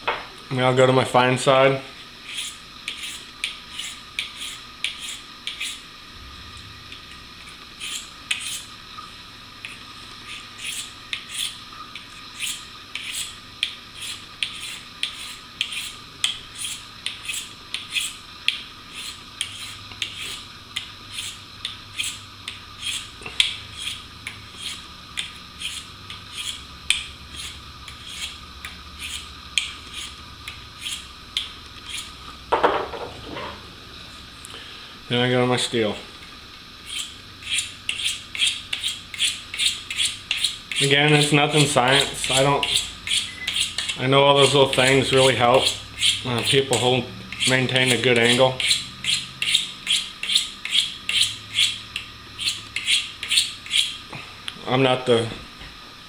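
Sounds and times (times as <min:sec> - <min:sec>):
blade scraping sharpening stone: 0:02.2 - 0:05.8, 0:07.8 - 0:08.7, 0:09.6 - 0:28.4, 0:29.0 - 0:30.2, 0:30.8 - 0:32.2, 0:36.8 - 0:54.0.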